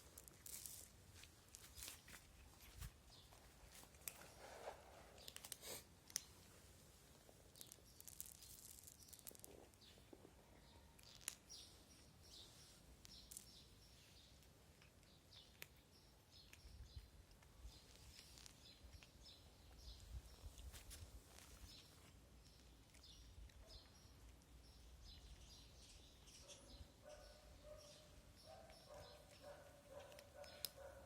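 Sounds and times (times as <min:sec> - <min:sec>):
bird chirps: 0:23.1 - 0:31.0.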